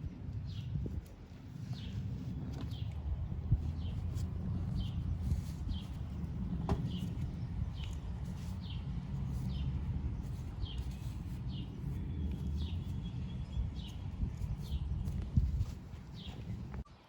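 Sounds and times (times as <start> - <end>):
bird chirping: 3.6 - 16.9.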